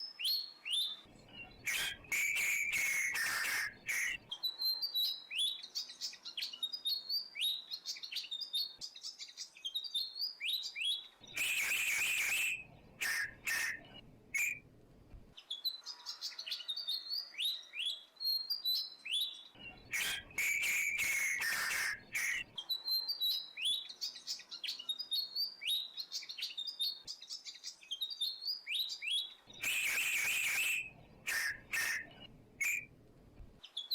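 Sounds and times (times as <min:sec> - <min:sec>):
birds chirping: 0:01.0 - 0:04.9, 0:11.2 - 0:14.8, 0:19.5 - 0:24.5, 0:29.0 - 0:33.8
held whistling note: 0:29.6 - 0:32.9.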